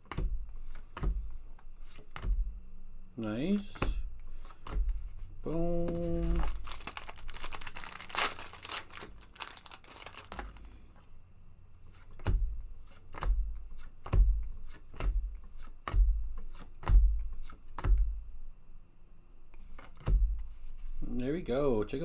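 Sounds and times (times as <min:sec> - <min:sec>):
foil wrapper crinkling and tearing: 0:06.1 - 0:10.7.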